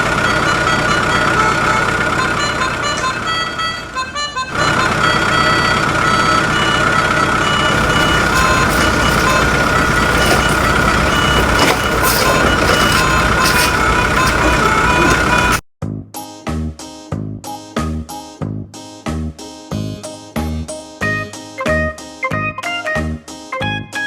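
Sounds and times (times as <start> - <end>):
constant high whine: 0.0 - 15.6
truck rumbling: 0.0 - 15.6.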